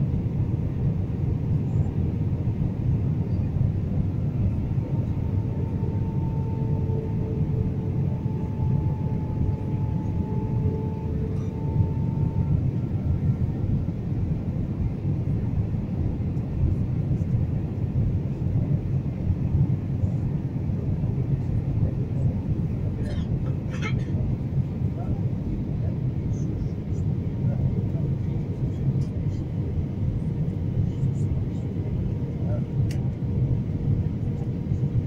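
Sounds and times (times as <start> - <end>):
thin steady whine: 0.0 - 23.8
airliner engine and airflow roar: 0.0 - 35.0.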